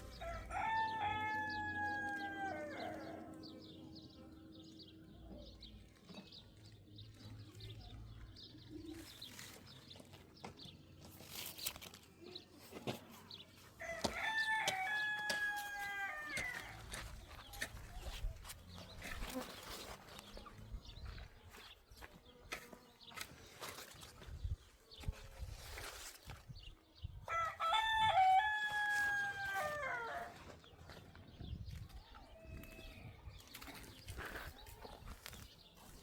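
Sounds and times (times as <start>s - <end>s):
rooster crowing: 0.2s - 3.3s, 13.8s - 16.8s, 27.3s - 30.4s.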